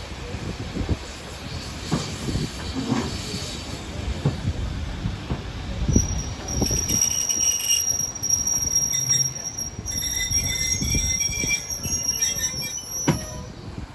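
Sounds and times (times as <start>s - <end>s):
train rumbling: 0.0s - 13.9s
train wheels squealing: 5.8s - 13.6s.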